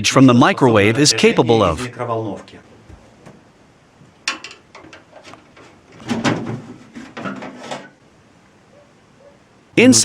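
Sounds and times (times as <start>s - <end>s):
scraping and rattling: 4.3s - 8.0s.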